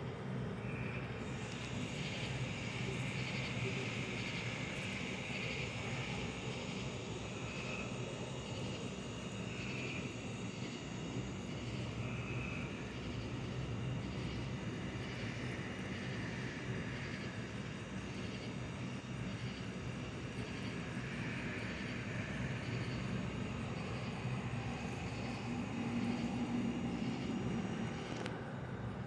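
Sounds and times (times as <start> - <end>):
low mechanical drone: 12.6 - 29.0.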